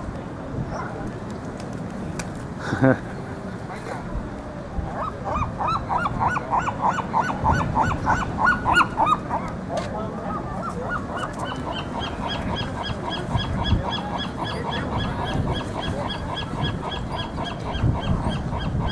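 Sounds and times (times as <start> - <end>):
seagulls squawking: 4.9 - 18.9.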